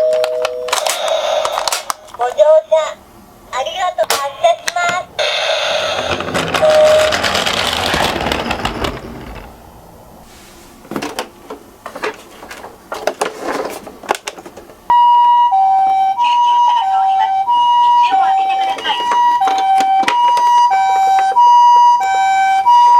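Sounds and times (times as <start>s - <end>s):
toy cars rattling down plastic slope: 5.2s - 9.7s
two-tone ambulance siren: 14.9s - 22.9s.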